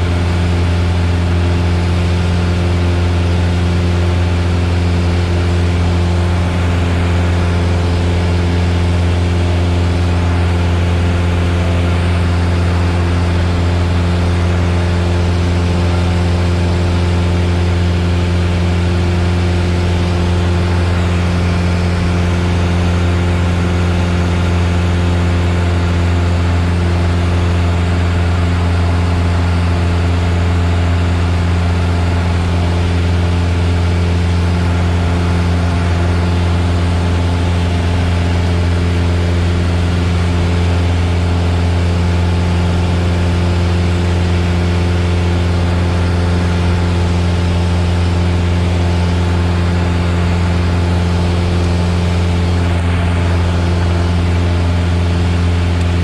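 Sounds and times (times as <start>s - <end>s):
propeller aircraft engine drone: 0.0s - 56.0s.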